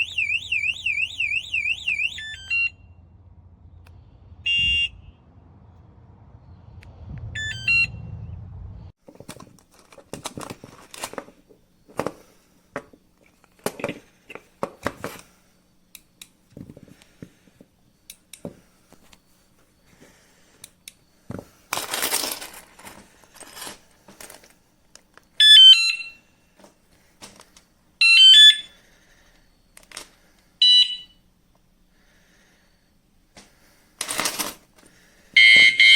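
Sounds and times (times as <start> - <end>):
bike alarm electronic chirps: 0.0 - 3.0, 4.4 - 5.0, 7.4 - 8.0, 25.4 - 26.4, 28.0 - 29.5, 30.6 - 31.3, 35.3 - 35.9.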